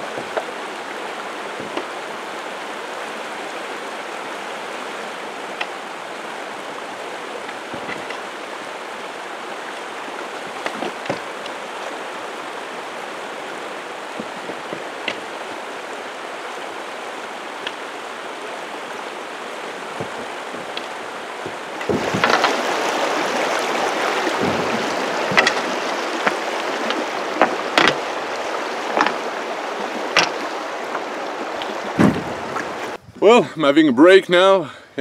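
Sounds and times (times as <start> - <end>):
river water rushing: 0.0 - 33.0
sharp knocks and clicks: 7.7 - 8.2, 10.6 - 11.6, 14.2 - 15.3, 20.0 - 22.6, 24.4 - 28.2, 28.9 - 29.3, 30.1 - 32.7.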